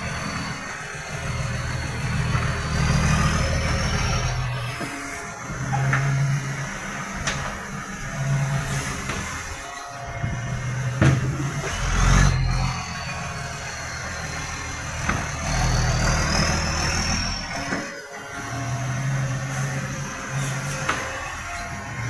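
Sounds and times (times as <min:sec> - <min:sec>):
diesel engine with leaking exhaust: 0:00.0 - 0:22.0.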